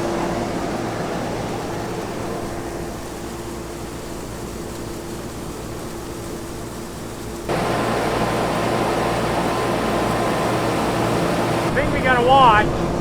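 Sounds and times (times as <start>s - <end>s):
straw blower rushing: 7.5s - 13.0s.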